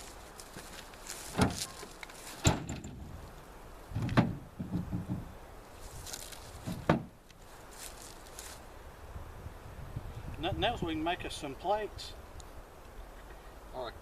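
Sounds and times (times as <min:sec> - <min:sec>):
sharp knocks: 0:02.4 - 0:03.1, 0:04.0 - 0:05.3, 0:06.6 - 0:07.1
dull low thuds: 0:03.9 - 0:05.4, 0:06.6 - 0:07.2.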